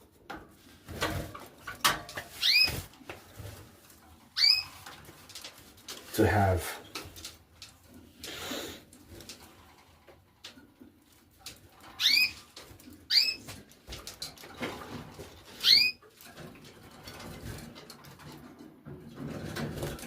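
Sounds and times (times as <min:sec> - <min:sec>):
canary call notes: 0:04.4 - 0:04.6, 0:15.6 - 0:16.0.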